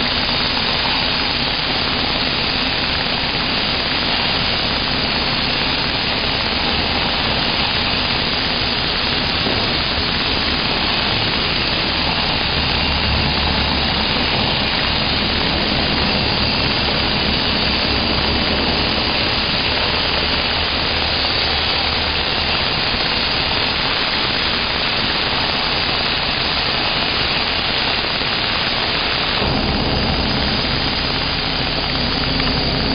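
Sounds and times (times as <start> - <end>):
plasma cutter hissing: 0.0 - 32.9
low rumble: 4.7 - 22.2, 28.9 - 32.9.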